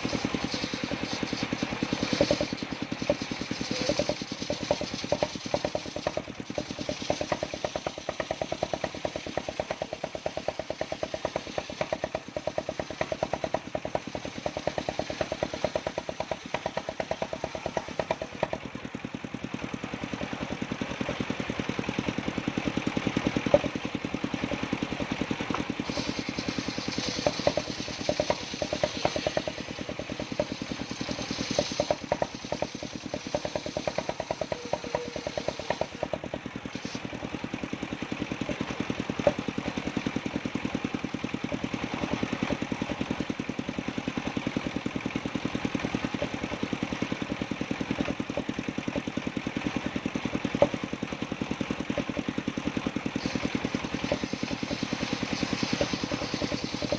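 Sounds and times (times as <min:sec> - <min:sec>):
saw blade cutting wood: 0:00.0 - 0:18.7, 0:20.1 - 0:43.3, 0:44.1 - 0:50.9, 0:51.7 - 0:56.9
sawmill engine running: 0:00.0 - 0:56.9
sharp knocks: 0:25.9 - 0:37.0.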